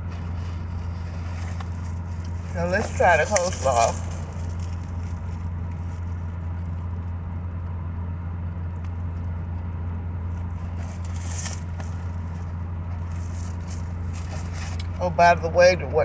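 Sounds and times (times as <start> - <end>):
air conditioning hum: 0.0 - 16.0
brief rustle: 10.6 - 12.2.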